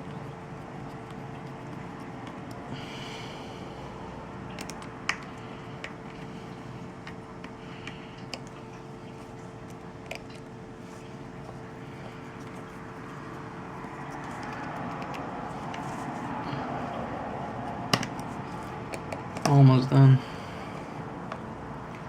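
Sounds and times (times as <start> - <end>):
steady background hum: 0.0 - 22.0.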